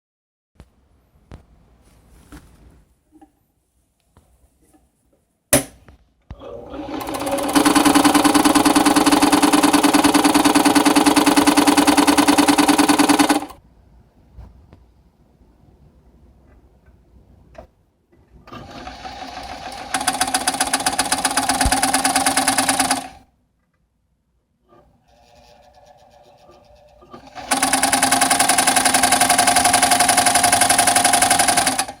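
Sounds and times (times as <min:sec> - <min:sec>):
sewing machine running with knocking: 0:06.4 - 0:13.6, 0:18.5 - 0:23.2, 0:25.1 - 0:32.0.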